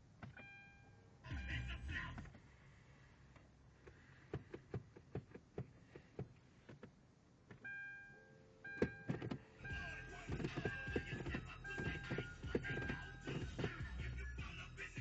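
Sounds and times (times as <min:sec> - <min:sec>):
car electronic chime tones: 0:00.4 - 0:02.2, 0:07.6 - 0:15.0
car electrics clicking: 0:03.4 - 0:14.1.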